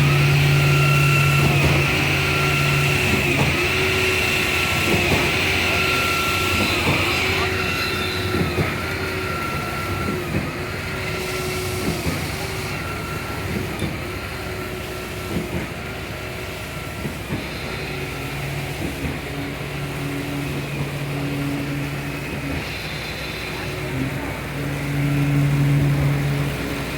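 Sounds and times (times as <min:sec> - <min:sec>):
concrete pump machinery running: 0:00.0 - 0:26.9
pump knocking: 0:00.0 - 0:26.9.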